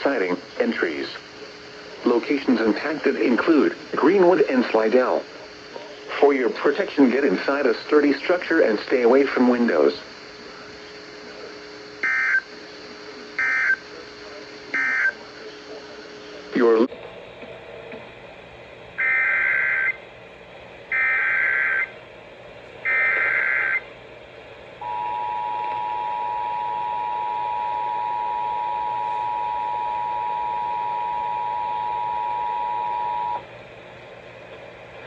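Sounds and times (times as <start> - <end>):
harsh data bursts: 0.0 - 16.9, 19.0 - 20.0, 20.9 - 21.9, 22.8 - 23.9
two-tone attention signal: 24.8 - 33.4.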